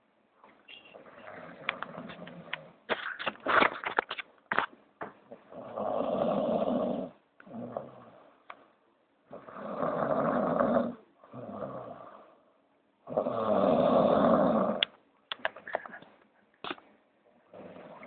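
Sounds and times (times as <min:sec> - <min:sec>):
person snoring heavily: 0:05.5 - 0:08.2, 0:09.3 - 0:12.3, 0:13.1 - 0:14.8.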